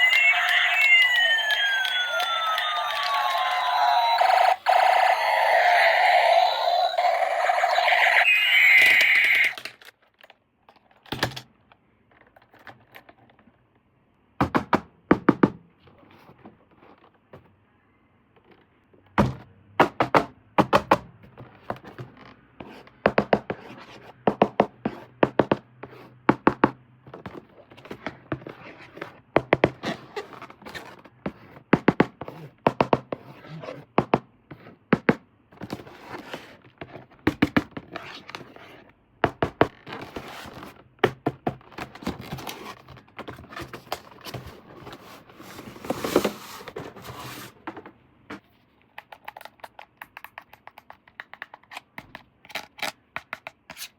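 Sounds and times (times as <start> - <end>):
toy siren sound effect: 0.0 - 9.7.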